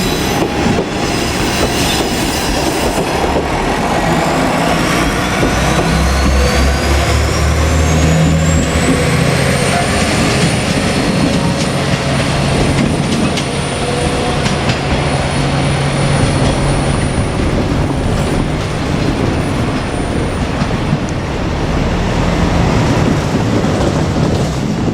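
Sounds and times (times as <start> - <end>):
train clicks: 0.0 - 24.9
wheels on rails: 0.0 - 24.9
diesel engine drone: 3.5 - 24.9.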